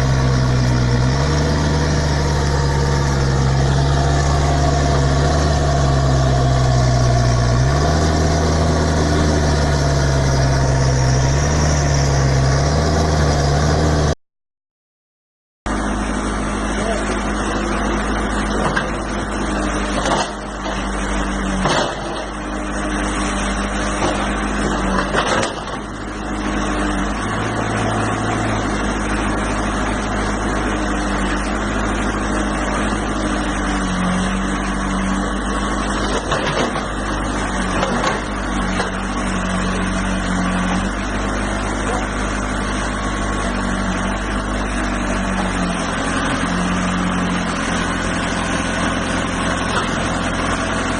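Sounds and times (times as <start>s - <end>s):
heavy machinery diesel engine: 0.0s - 14.2s, 15.7s - 50.9s
sharp knocks and clanks: 20.0s - 20.8s, 21.6s - 22.3s.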